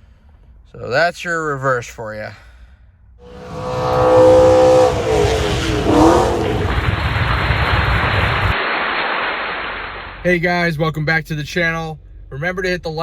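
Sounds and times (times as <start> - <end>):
car engine revving: 3.2 - 8.6
steady noisy rush: 3.2 - 8.9.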